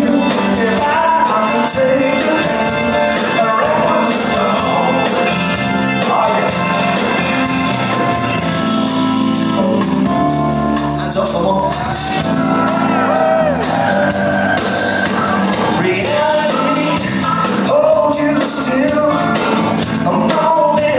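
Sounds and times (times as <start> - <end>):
person singing: 0.0 - 8.1, 15.2 - 20.9
blues-rock band playing live: 0.0 - 20.9.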